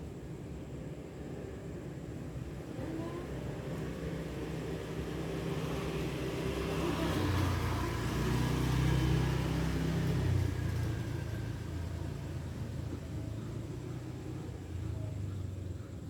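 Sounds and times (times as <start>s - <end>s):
vehicle engine passing by: 3.9s - 15.8s.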